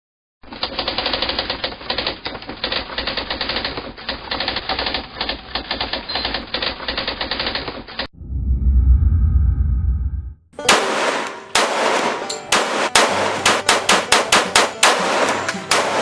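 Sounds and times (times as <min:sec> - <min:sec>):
typewriter keys clattering: 0:00.5 - 0:08.1.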